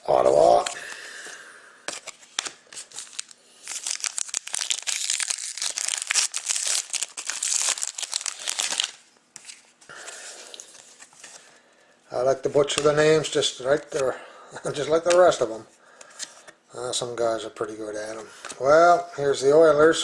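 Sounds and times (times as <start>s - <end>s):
wrapper crinkling and tearing: 1.9s - 9.6s.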